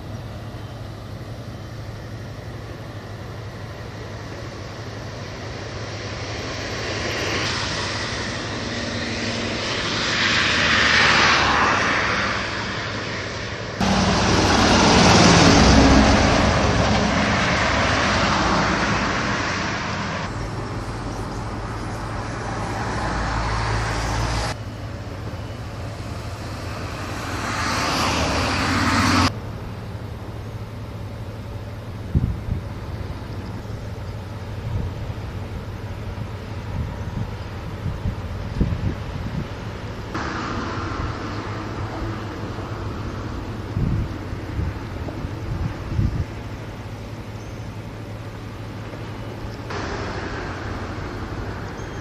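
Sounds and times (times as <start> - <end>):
traffic passing: 0.0 - 52.0.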